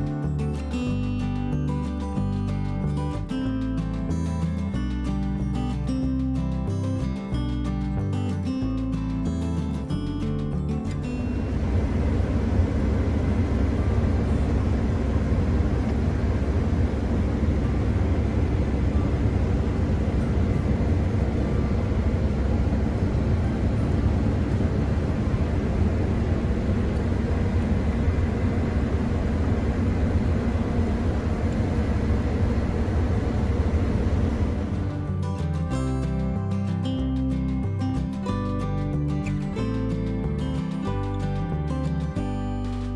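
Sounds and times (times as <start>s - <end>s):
combine harvester engine rumble: 10.9s - 35.2s
faint machine whine: 11.0s - 35.2s.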